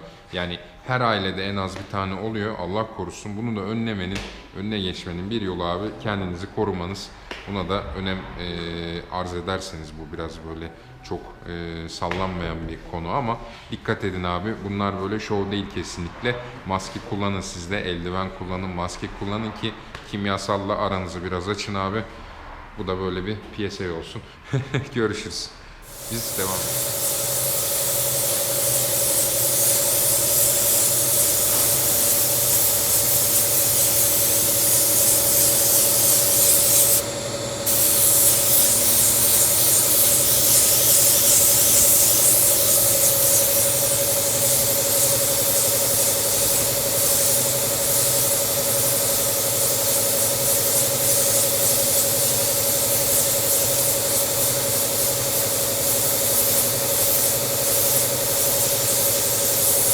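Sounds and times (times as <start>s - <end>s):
air supply hum: 25.8s - 59.9s
spray gun hissing: 25.8s - 59.9s.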